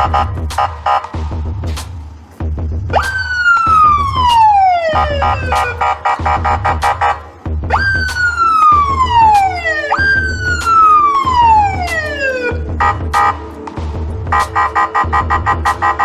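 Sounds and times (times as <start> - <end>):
electronic police siren: 2.9 - 13.5.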